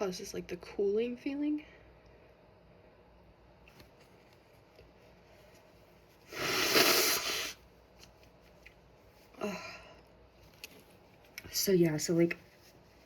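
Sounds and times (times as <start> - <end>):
air rushing through nose: 6.2 - 7.6.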